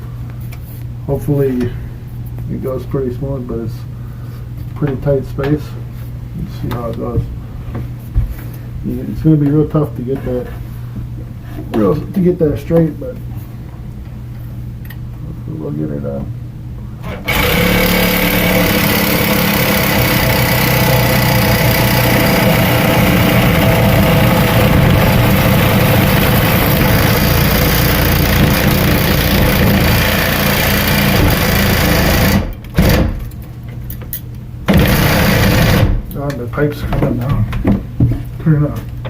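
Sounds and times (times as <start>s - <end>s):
power saw cutting iron pipe: 17.1s - 32.5s.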